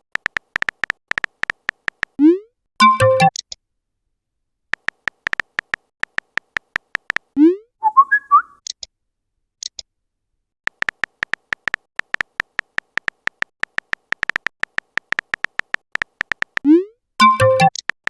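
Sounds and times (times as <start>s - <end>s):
phone keyboard typing clicks: 0.0s - 2.2s, 2.8s - 3.6s, 4.7s - 7.4s, 10.7s - 18.0s.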